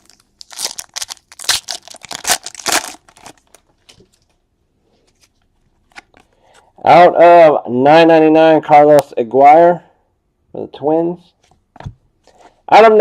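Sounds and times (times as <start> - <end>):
packaging crinkling and tearing: 0.0 - 4.3.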